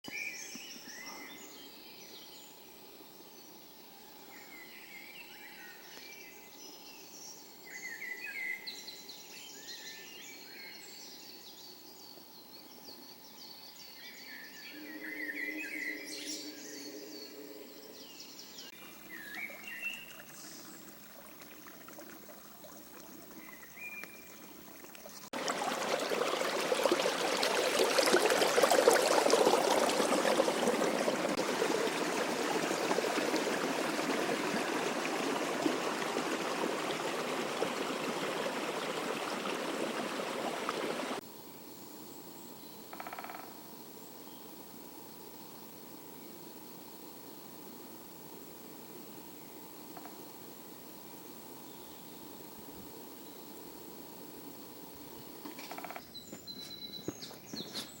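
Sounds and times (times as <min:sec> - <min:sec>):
loud rushing stream: 0:25.3 - 0:41.2.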